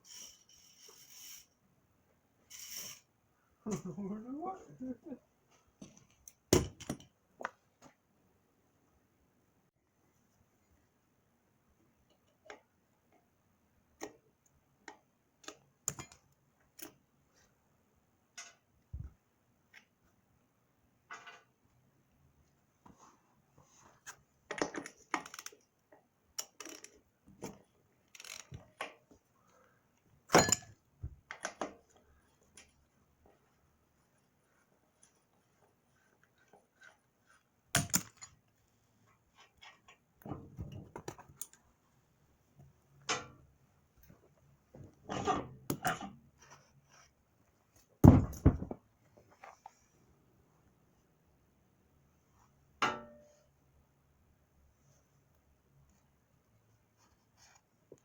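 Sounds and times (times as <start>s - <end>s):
hand tools and metal clinking: 30.3s - 31.8s, 37.8s - 38.5s.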